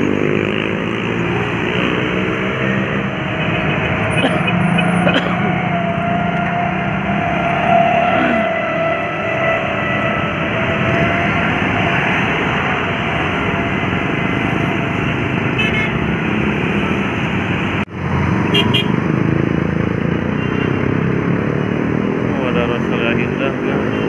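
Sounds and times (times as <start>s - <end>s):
road traffic: 0.0s - 24.0s.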